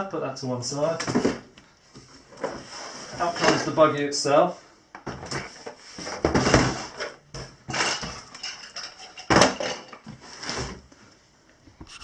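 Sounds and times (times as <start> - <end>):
packaging rustling and scraping: 5.3 - 10.9.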